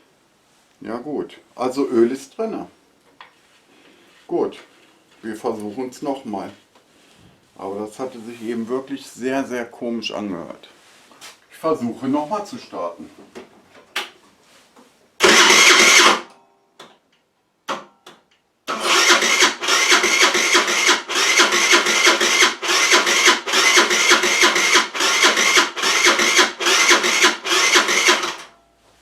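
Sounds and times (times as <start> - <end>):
scooter electric starter cranking: 15.2 - 16.3, 18.7 - 28.5.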